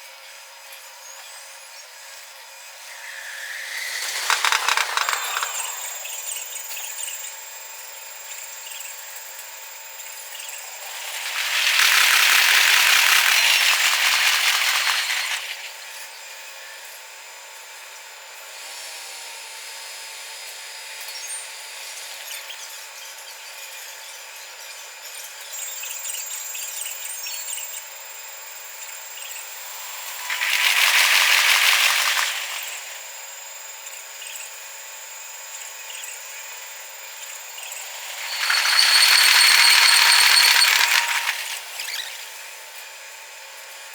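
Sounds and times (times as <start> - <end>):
trains passing: 2.8 - 6.8, 10.7 - 15.9, 29.5 - 33.2, 37.4 - 42.2.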